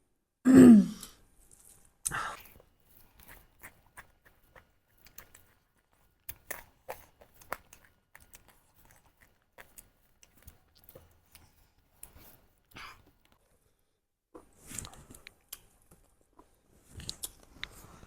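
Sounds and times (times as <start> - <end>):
person chewing with mouth clicks: 2.0 - 13.4.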